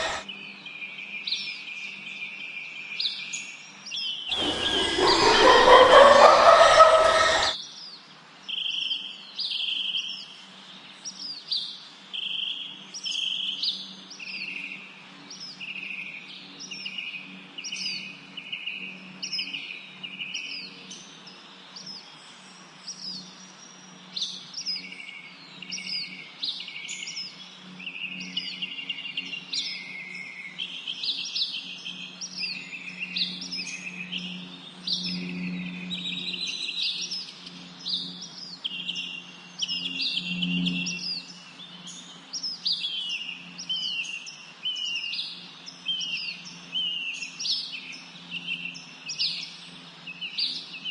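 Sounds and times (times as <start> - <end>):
birds chirping: 0.0 - 0.2, 4.3 - 7.6
steady low hum: 0.0 - 0.3, 4.3 - 7.6.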